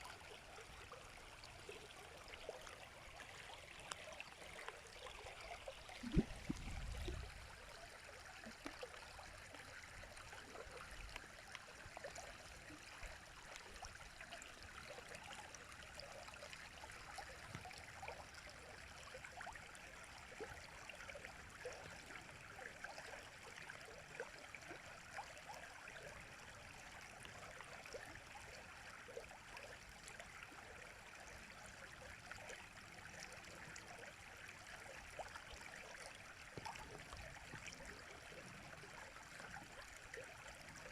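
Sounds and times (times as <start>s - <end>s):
river water running: 0.0s - 40.9s
brief low thump: 6.0s - 7.3s.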